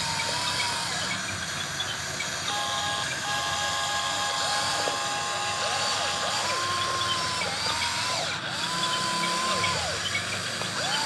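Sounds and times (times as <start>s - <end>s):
small electric motors whining: 0.0s - 11.0s.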